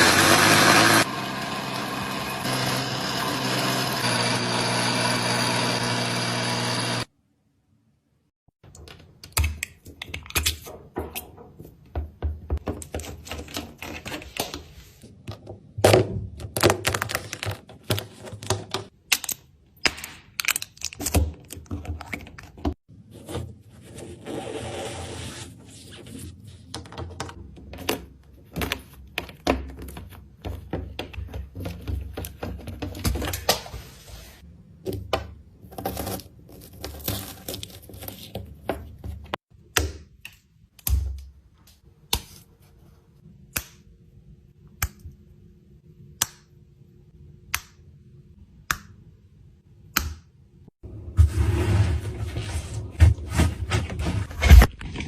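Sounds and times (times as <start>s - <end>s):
scraping or rustling: 51.0s - 55.0s.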